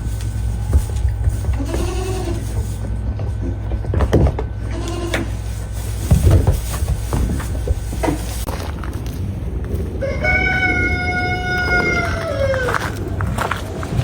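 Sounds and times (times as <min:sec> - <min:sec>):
low steady rumble: 0:00.0 - 0:14.0
young goat bleating: 0:04.7 - 0:05.3
knocks and scuffs: 0:05.6 - 0:09.0.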